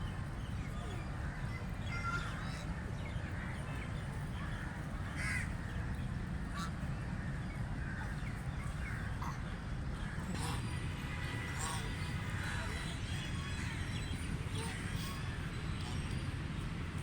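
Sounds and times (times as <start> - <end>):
ducks calling: 10.1 - 10.7.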